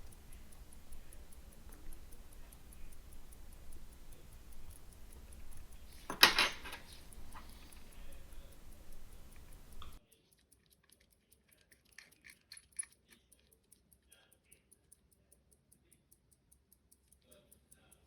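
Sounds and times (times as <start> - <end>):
steady hiss: 0.0 - 10.0
pocket watch ticking: 0.0 - 18.0
small metallic tool clicks: 0.0 - 18.0.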